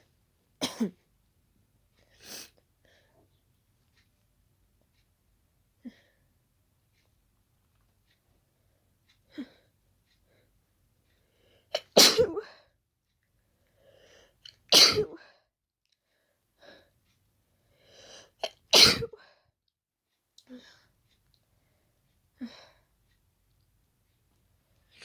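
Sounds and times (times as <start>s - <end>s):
person sneezing: 11.8s - 12.5s.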